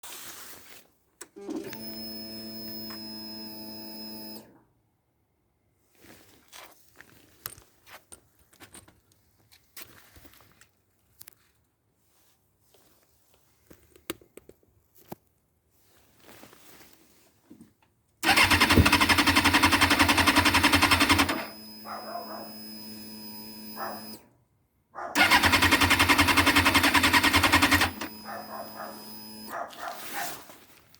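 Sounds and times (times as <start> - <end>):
engine starter cranking: 18.2 - 24.2, 25.2 - 29.5.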